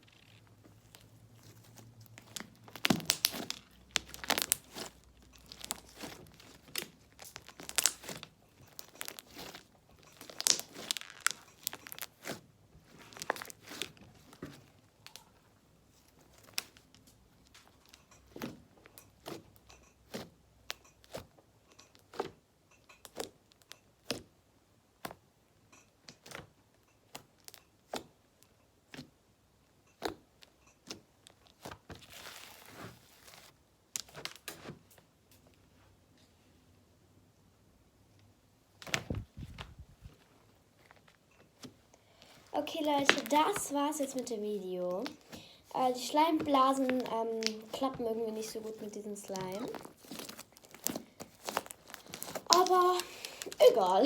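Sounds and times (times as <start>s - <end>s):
slime crackling and popping: 0.0s - 15.4s, 16.2s - 24.3s, 42.6s - 54.0s.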